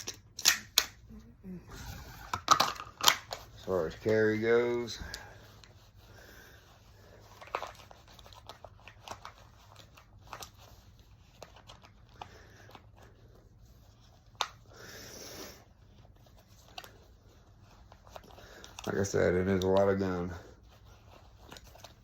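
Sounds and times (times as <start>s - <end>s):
pistol holster clicks: 0.0s - 1.0s
clothing rustling: 3.2s - 14.4s.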